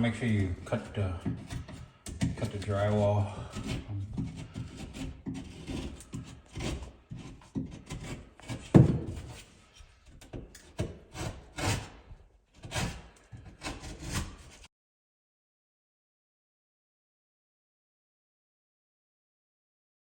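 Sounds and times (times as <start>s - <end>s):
hand saw cutting drywall: 0.0s - 14.7s.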